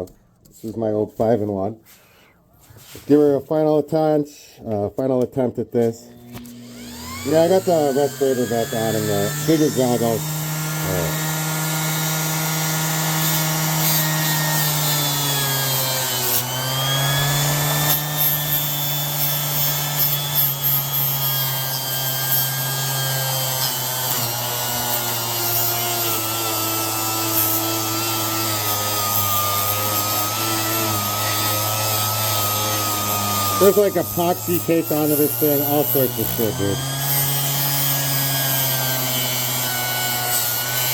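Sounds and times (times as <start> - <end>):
orbital sander motor whine: 6.0 - 40.9
sanding disc rubbing on steel: 25.5 - 36.6.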